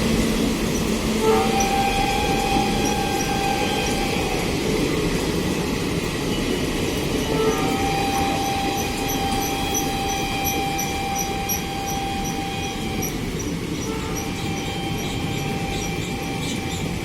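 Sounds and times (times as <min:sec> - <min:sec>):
train wheels rumbling on track: 0:00.0 - 0:17.0
thin steady squeal: 0:00.3 - 0:17.0
regular high squeak: 0:07.5 - 0:17.0.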